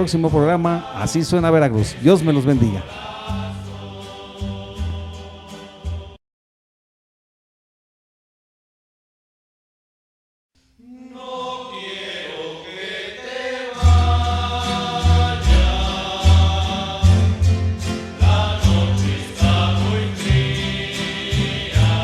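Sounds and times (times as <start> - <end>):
bass and strummed guitars: 0.0 - 6.2, 13.8 - 22.0
group of voices singing: 0.0 - 6.2, 10.8 - 22.0.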